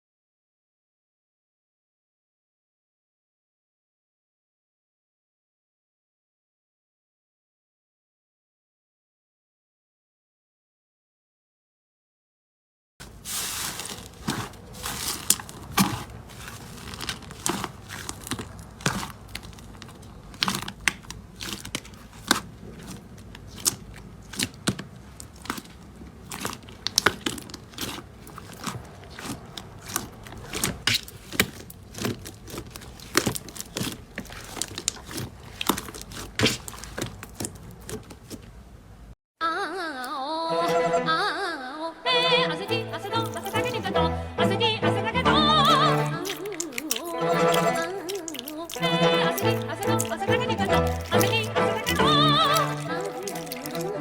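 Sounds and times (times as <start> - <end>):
slime squeezed by hand: 13.1 - 38.4, 42.7 - 44.2, 45.4 - 54.0.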